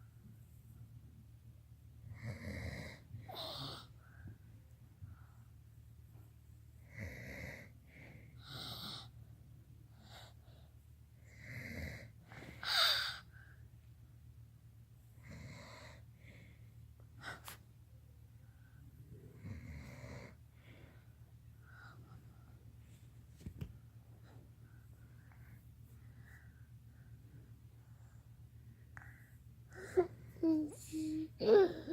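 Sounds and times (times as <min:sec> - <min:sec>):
low steady hum: 0:00.0 - 0:31.9
rough wheezy snores: 0:02.1 - 0:03.9, 0:19.4 - 0:20.4.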